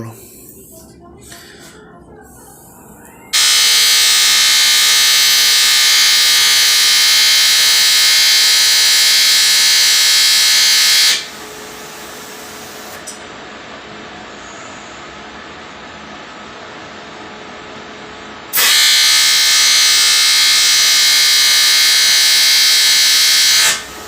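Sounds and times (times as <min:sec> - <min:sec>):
welding arc buzzing: 0:03.3 - 0:11.4, 0:18.5 - 0:24.0.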